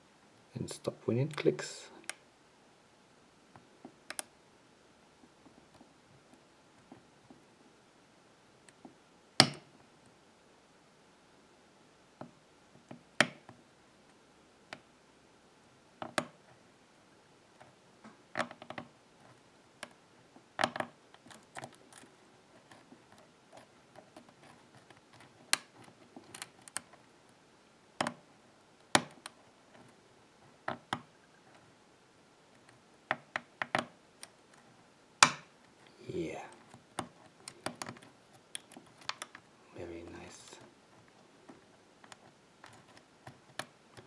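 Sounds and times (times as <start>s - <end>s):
lock pick metallic clicks: 9.4s - 9.7s, 37.0s - 39.4s.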